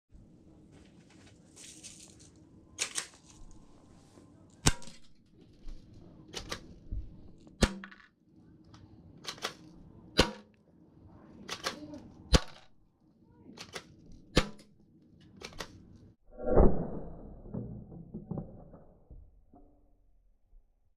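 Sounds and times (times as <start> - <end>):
airsoft gun shots: 4.6 - 5.0, 10.2 - 10.5, 13.6 - 14.7.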